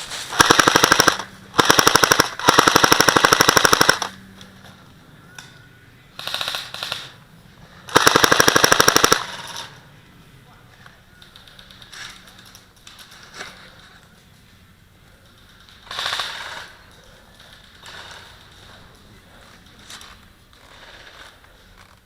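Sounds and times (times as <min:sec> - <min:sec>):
airsoft guns firing bursts: 0:00.3 - 0:04.2, 0:07.9 - 0:09.6.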